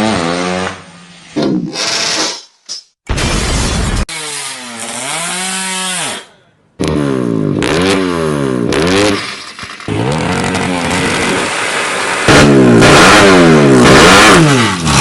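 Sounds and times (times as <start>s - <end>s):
motorcycle engine revving hard: 0.0s - 0.8s, 6.8s - 15.0s.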